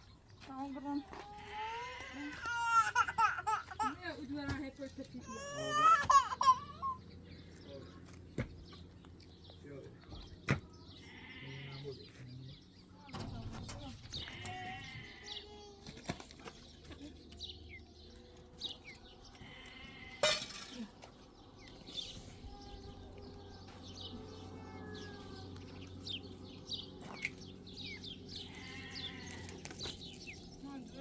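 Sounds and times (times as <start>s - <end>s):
animals bleating: 1.0s - 3.0s, 5.2s - 6.9s, 10.9s - 12.2s, 14.0s - 15.8s, 19.2s - 20.9s, 22.5s - 26.7s, 28.0s - 30.0s.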